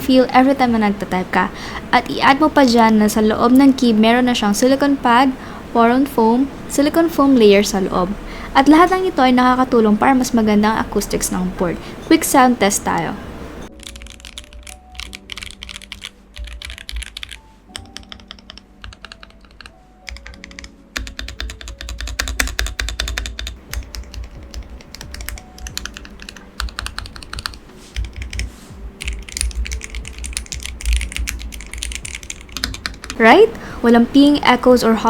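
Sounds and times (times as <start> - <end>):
background music: 0.0 - 35.0
mechanical keyboard typing: 13.7 - 33.5.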